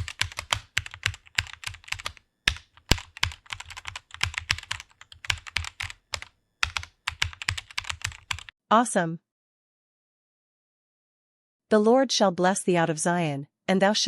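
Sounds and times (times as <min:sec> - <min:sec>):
rapid typing on keyboard: 0:00.0 - 0:08.5.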